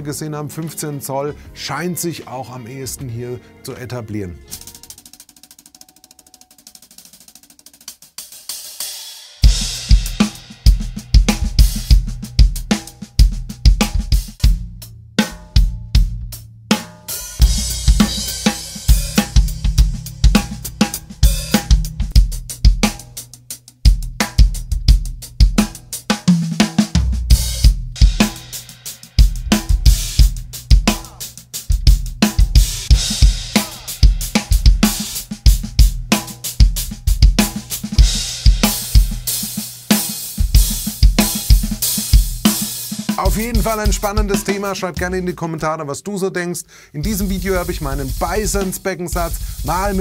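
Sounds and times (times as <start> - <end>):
drum kit playing a groove: 4.2 - 45.8, 47.0 - 50.0
bass line backing track: 9.4 - 45.8, 47.0 - 50.0.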